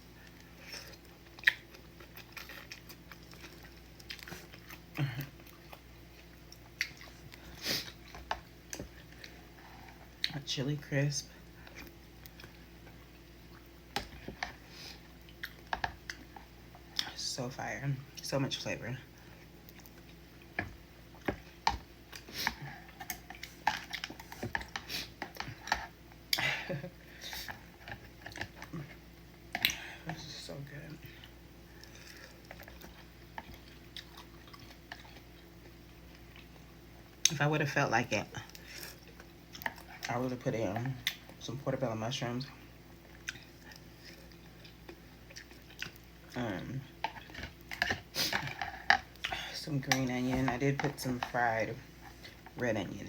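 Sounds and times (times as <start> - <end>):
soft chewing and lip smacks: 0.2 - 10.4, 11.4 - 17.2, 19.1 - 26.5, 30.9 - 37.4, 38.4 - 40.1, 40.8 - 41.4, 42.5 - 46.4, 47.0 - 49.6.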